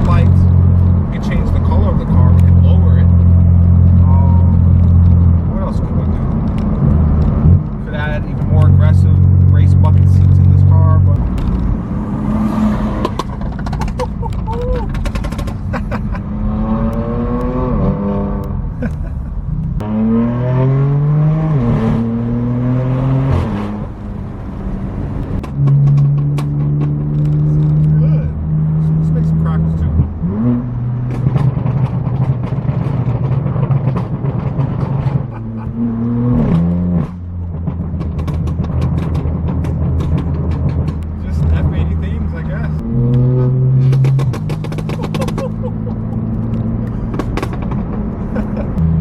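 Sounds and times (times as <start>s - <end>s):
car engine with exhaust crackles: 0.0s - 49.0s.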